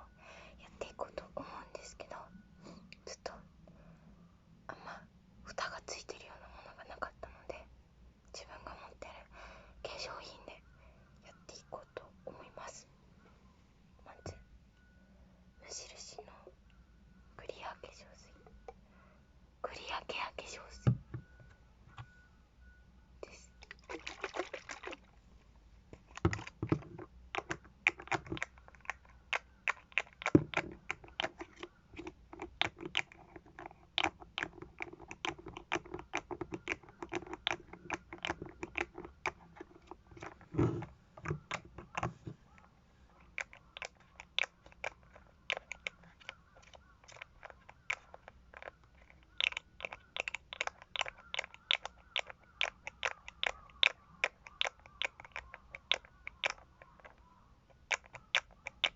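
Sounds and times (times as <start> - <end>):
container lids clicking and snapping: 26.0 - 28.9.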